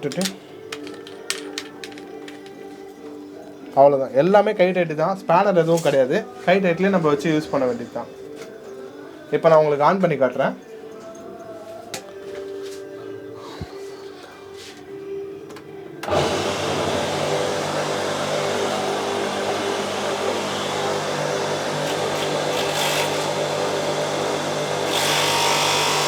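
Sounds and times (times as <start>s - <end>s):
pressure washer motor humming: 16.0s - 26.0s.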